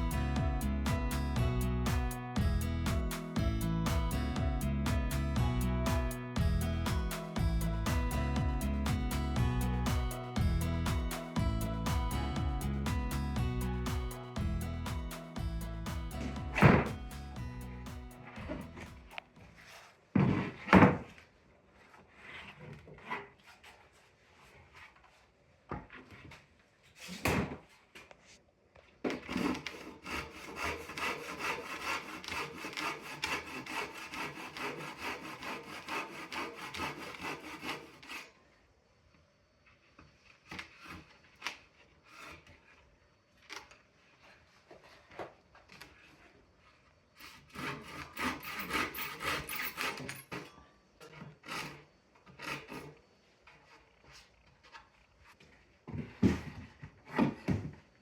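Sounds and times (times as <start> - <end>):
hand saw cutting wood: 29.1 - 38.4, 40.5 - 42.7, 47.2 - 50.5, 51.1 - 53.0.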